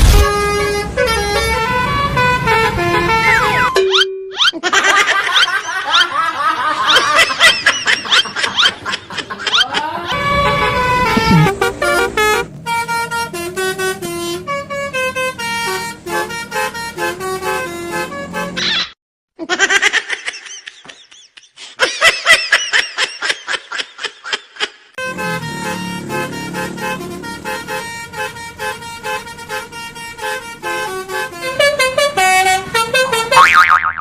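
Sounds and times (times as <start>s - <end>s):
multi-tone bus horn tune: 0.0s - 3.9s, 10.1s - 18.7s, 25.0s - 33.5s.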